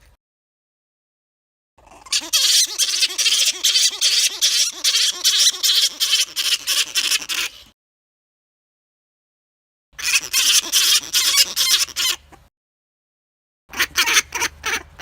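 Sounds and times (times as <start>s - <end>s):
flying foxes screeching: 1.8s - 7.7s, 10.0s - 12.2s.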